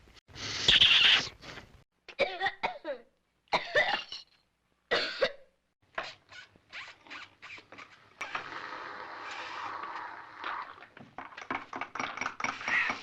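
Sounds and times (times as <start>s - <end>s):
person coughing: 3.6s - 4.3s.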